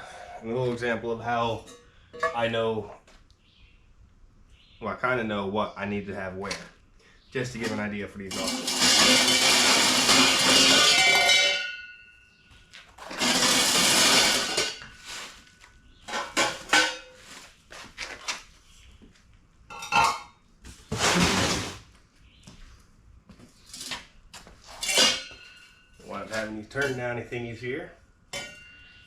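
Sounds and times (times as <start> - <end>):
metal pipes clanking: 0.8 - 2.6, 7.6 - 12.1, 13.0 - 15.0, 24.8 - 27.2, 28.3 - 29.0
metal scraping: 7.6 - 12.2, 13.0 - 17.4, 24.6 - 27.4.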